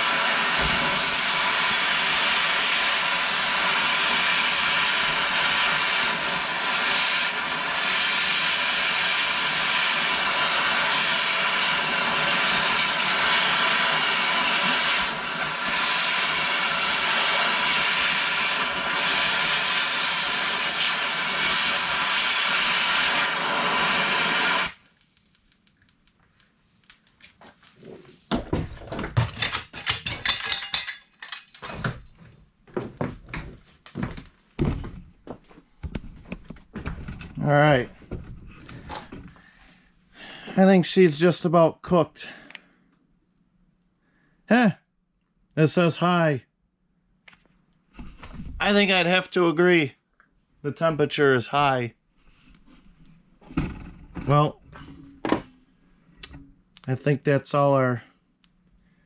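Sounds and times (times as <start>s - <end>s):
hissing air: 0.0s - 24.9s
clunks and rattles: 28.3s - 35.2s, 35.9s - 37.4s, 53.4s - 55.5s.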